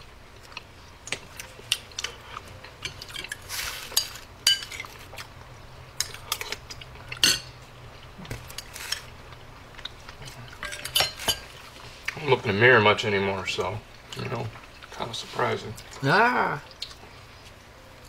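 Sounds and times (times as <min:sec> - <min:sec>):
spoons clinking against bowls: 0:02.8 - 0:04.9, 0:07.1 - 0:07.6, 0:10.6 - 0:11.6.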